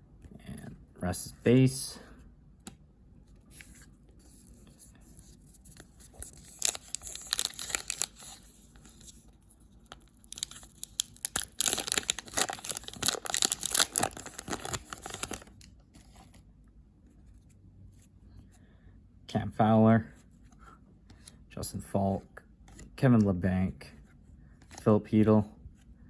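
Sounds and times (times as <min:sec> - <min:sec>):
foil wrapper tearing and crinkling: 0:05.8 - 0:09.2, 0:09.9 - 0:15.7.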